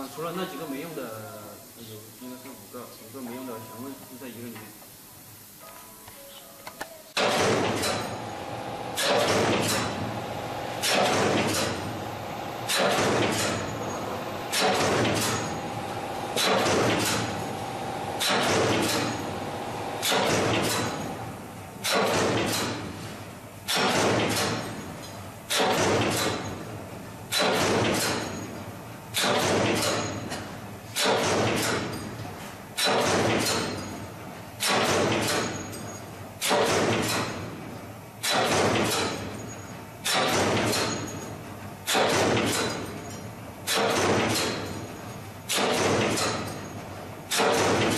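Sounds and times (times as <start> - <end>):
punching machine punching steel: 7.2 - 47.9.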